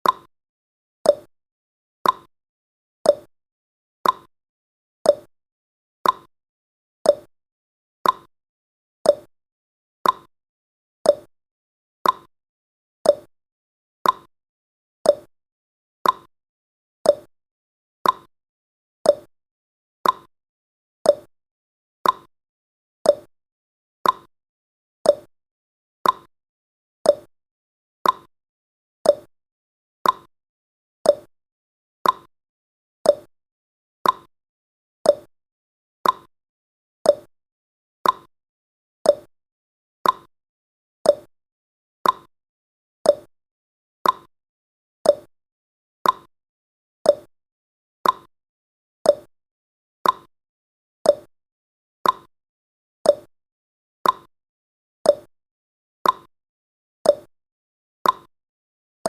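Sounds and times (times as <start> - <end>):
clock tick-tock: 0.0 - 0.3, 1.1 - 1.3, 2.0 - 2.3, 3.1 - 3.3, 4.0 - 4.3, 5.1 - 5.3, 6.0 - 6.3, 7.1 - 7.3, 8.0 - 8.3, 9.1 - 9.3, 10.0 - 10.3, 11.1 - 11.3, 12.0 - 12.3, 13.0 - 13.3, 14.0 - 14.3, 15.1 - 15.3, 16.0 - 16.3, 17.0 - 17.3, 18.0 - 18.3, 19.0 - 19.3, 20.0 - 20.3, 21.0 - 21.3, 22.0 - 22.3, 23.0 - 23.3, 24.0 - 24.3, 25.0 - 25.3, 26.0 - 26.3, 27.0 - 27.3, 28.0 - 28.3, 29.0 - 29.3, 30.0 - 30.3, 31.0 - 31.3, 32.0 - 32.3, 33.0 - 33.3, 34.0 - 34.3, 35.0 - 35.3, 36.0 - 36.3, 37.0 - 37.3, 38.0 - 38.3, 39.0 - 39.3, 40.0 - 40.3, 41.0 - 41.3, 42.0 - 42.3, 43.0 - 43.3, 44.0 - 44.3, 45.0 - 45.3, 46.0 - 46.3, 47.0 - 47.3, 48.0 - 48.3, 49.0 - 49.3, 50.0 - 50.3, 51.0 - 51.3, 52.0 - 52.3, 53.0 - 53.3, 54.0 - 54.3, 55.1 - 55.3, 56.0 - 56.3, 57.1 - 57.3, 58.0 - 58.3.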